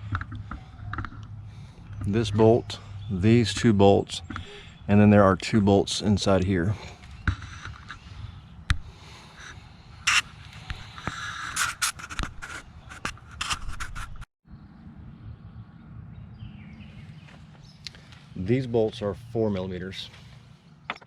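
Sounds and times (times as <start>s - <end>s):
allen key metal clicks and scrapes: 9.4s - 14.2s.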